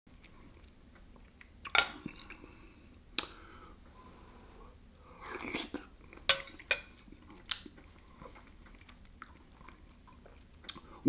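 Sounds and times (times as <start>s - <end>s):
person chewing: 0.2s - 2.6s, 5.0s - 11.0s.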